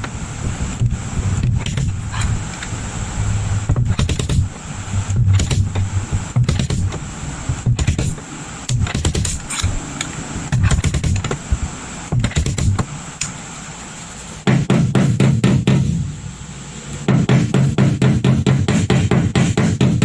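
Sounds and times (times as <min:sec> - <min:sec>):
dent puller electrical buzz: 0:00.0 - 0:13.8.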